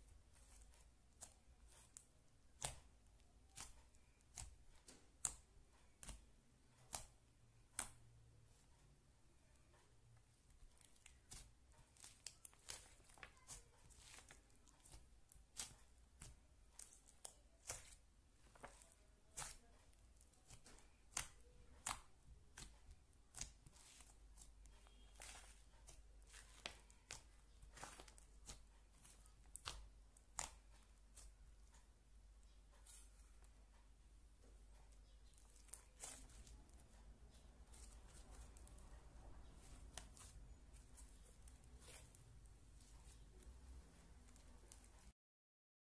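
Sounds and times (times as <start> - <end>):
slime squished by hand: 10.8 - 31.4, 35.0 - 45.1.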